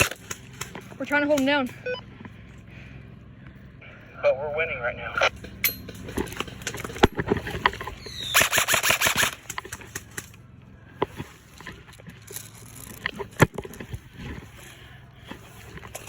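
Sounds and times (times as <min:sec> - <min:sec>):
sharp clicks and knocks: 0:00.0 - 0:01.6, 0:05.3 - 0:10.4, 0:11.0 - 0:14.4
airsoft gun firing burst: 0:08.2 - 0:10.1.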